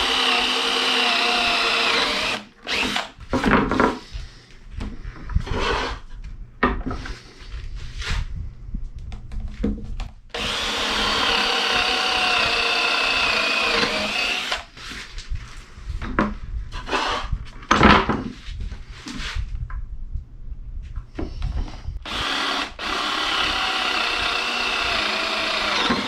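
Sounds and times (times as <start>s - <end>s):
power drill boring wood: 0.0s - 3.1s, 10.3s - 14.7s, 16.8s - 17.3s, 22.0s - 26.0s.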